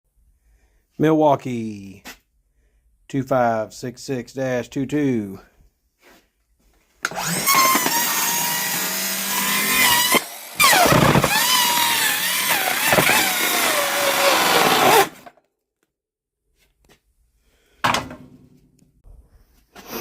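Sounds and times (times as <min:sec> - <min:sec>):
blade cutting cardboard: 0:07.1 - 0:15.4.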